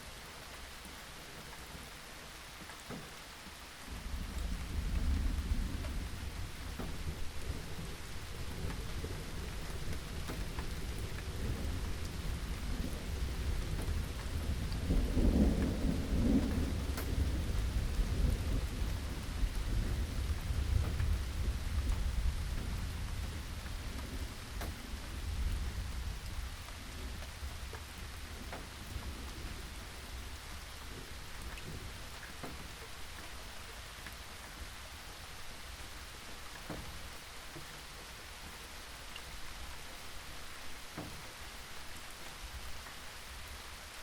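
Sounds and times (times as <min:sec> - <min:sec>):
rain with scattered drops: 0:00.0 - 0:44.0
thunder rumbling: 0:03.9 - 0:33.6.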